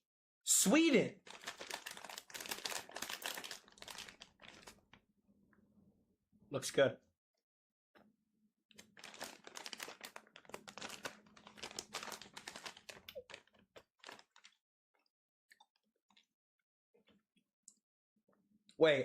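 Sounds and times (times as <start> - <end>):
plastic bag crinkling: 1.2 - 4.9, 8.8 - 14.6.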